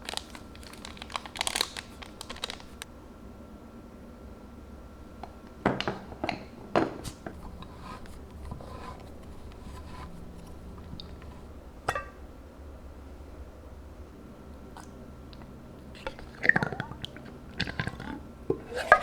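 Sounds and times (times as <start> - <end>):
kitchenware clinking and knocking: 5.6 - 7.1.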